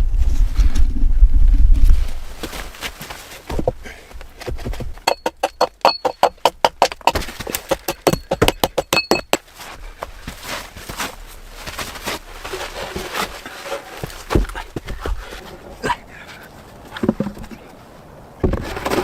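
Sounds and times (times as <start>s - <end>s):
soft crunching and scraping: 0.0s - 5.0s, 9.4s - 19.0s
sharp knocks: 4.5s - 9.4s.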